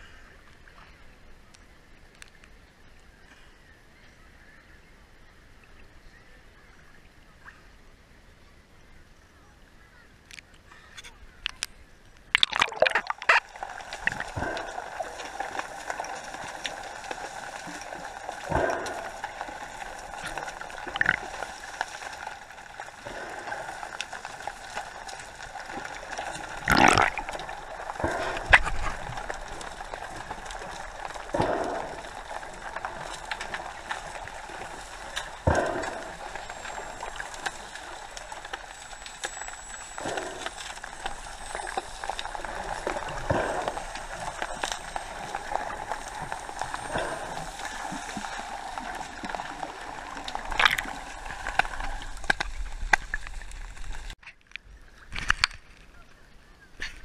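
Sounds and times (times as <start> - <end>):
sea water sloshing and splashing: 12.3 - 54.2.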